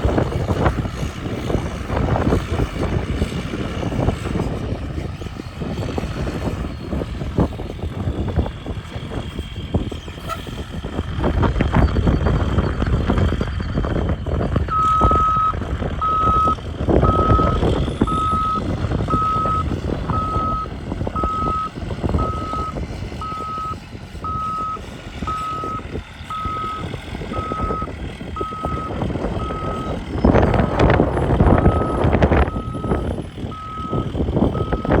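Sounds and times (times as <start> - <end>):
bus engine running: 0.0 - 35.0
back-up alarm beeping: 14.7 - 35.0.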